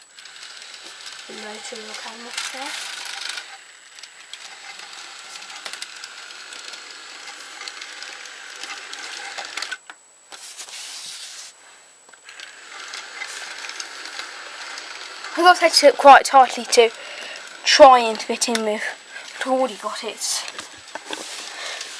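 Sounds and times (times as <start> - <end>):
toy train motor whirring: 0.0 - 11.6, 12.2 - 21.9
wheels clicking over track: 0.1 - 9.8, 12.3 - 19.5.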